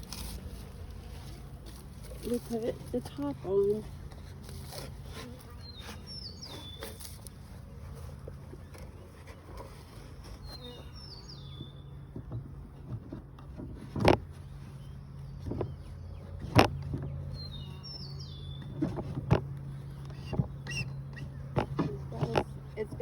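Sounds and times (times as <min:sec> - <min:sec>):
honeybees humming: 0:00.0 - 0:23.0
bird chirping: 0:05.5 - 0:07.3, 0:10.3 - 0:12.1, 0:14.4 - 0:22.9.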